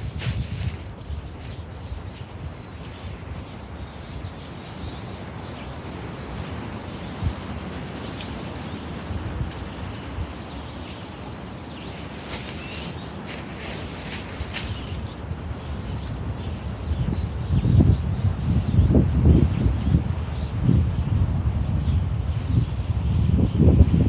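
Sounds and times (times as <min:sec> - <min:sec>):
strong wind on microphone: 0:00.0 - 0:04.3, 0:11.7 - 0:24.0
small birds chirping faintly: 0:00.0 - 0:21.2.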